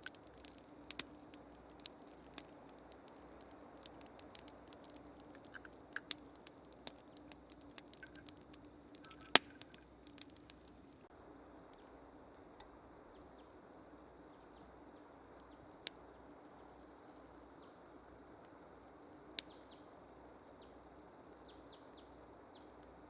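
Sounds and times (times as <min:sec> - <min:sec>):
sharp snaps: 0:00.0 - 0:10.8
faint steady hiss: 0:00.0 - 0:23.0
small birds chirping: 0:03.1 - 0:10.6, 0:13.0 - 0:13.6, 0:17.5 - 0:17.9, 0:19.4 - 0:22.8.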